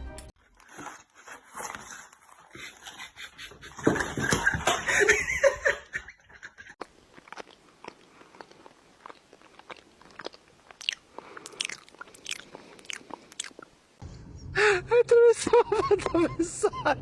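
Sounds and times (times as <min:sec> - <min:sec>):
pet chewing and crunching food: 0:06.8 - 0:13.7.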